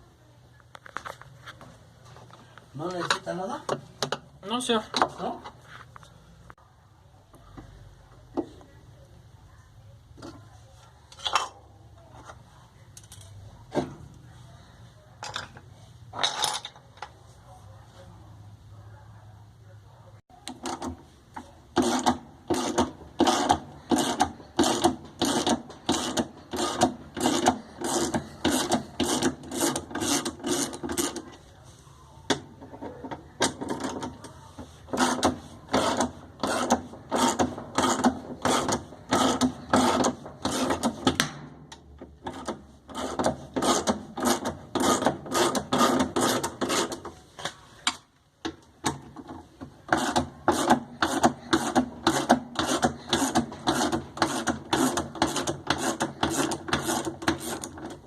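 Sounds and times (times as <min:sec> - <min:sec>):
hand tool strokes: 0:21.8 - 0:31.3, 0:49.9 - 0:58.0.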